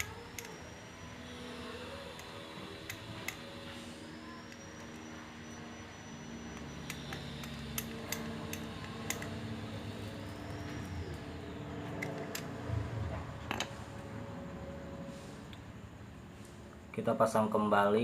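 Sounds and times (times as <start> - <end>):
steady low hum: 0.0 - 18.0
light switch parts clicking: 2.1 - 3.4, 6.6 - 9.5.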